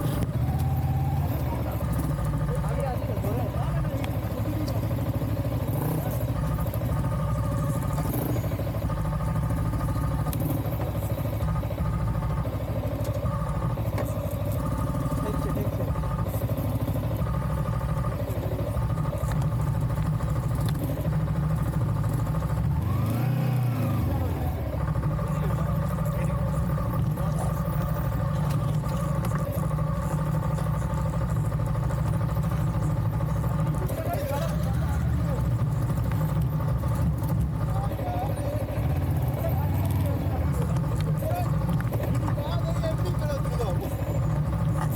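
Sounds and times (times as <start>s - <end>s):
vehicle engine running: 0.0s - 44.9s.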